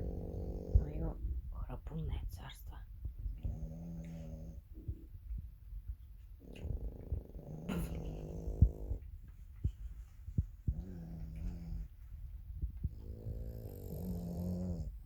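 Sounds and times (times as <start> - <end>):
dogs snoring: 0.0 - 1.2, 3.2 - 5.1, 6.2 - 15.0.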